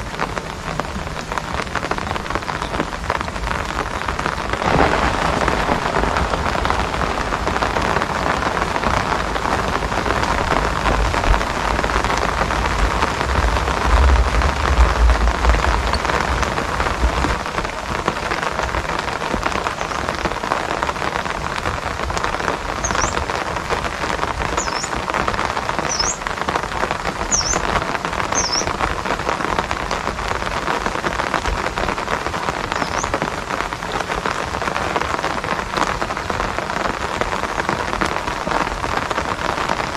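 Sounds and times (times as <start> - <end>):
rain pattering: 0.0 - 39.9
low rumble: 4.4 - 17.7.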